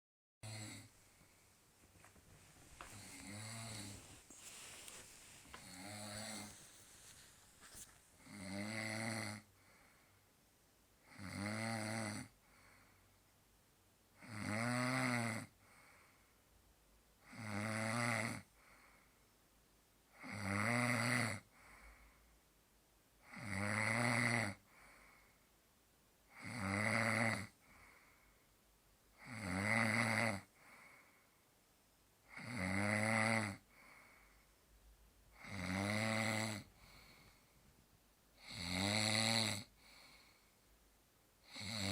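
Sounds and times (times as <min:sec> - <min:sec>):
man snoring: 0:00.4 - 0:00.9, 0:02.9 - 0:04.1, 0:05.5 - 0:06.7, 0:08.2 - 0:09.5, 0:11.0 - 0:12.3, 0:14.2 - 0:15.5, 0:17.2 - 0:18.5, 0:20.2 - 0:21.5, 0:23.2 - 0:24.6, 0:26.3 - 0:27.6, 0:29.2 - 0:30.5, 0:32.3 - 0:33.6, 0:35.4 - 0:37.2, 0:38.4 - 0:40.2, 0:41.4 - 0:41.9
faint breath: 0:02.8 - 0:08.2, 0:09.6 - 0:10.3, 0:12.4 - 0:13.3, 0:15.6 - 0:16.5, 0:18.6 - 0:19.3, 0:21.5 - 0:22.4, 0:24.7 - 0:25.5, 0:27.6 - 0:28.6, 0:30.6 - 0:31.5, 0:33.7 - 0:34.6, 0:36.7 - 0:37.8, 0:39.8 - 0:40.7.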